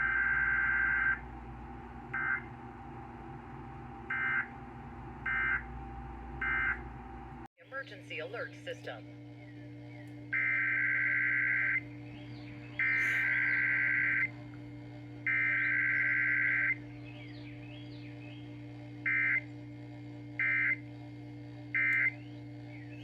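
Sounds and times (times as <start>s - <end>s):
steady low hum: 0.0s - 23.0s
raspy digital data bursts: 12.8s - 14.3s.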